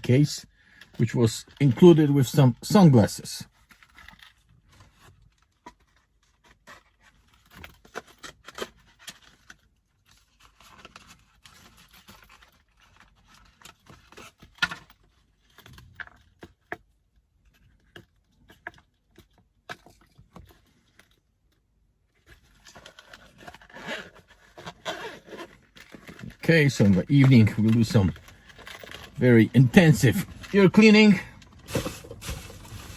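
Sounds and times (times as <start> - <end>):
case clicks and scrapes: 22.2 - 32.9
packaging rustling: 22.3 - 32.9.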